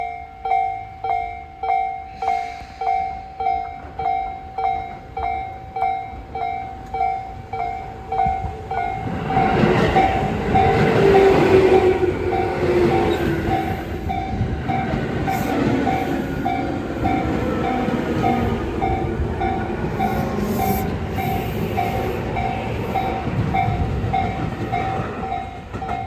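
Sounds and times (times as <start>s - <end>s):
electric train running: 8.4s - 26.0s.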